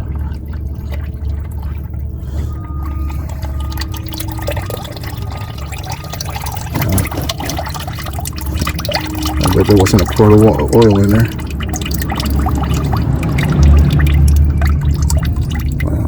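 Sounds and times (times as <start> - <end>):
liquid dripping: 0.0 - 16.0
oil pouring into a drain pan: 0.0 - 16.0
steady low hum: 0.0 - 16.0.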